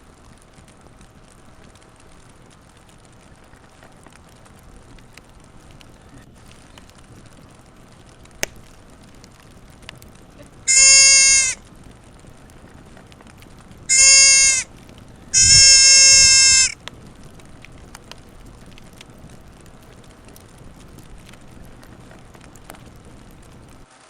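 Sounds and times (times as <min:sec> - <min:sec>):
deer fawn bleating: 0:10.7 - 0:11.6, 0:13.9 - 0:14.6, 0:15.4 - 0:16.8.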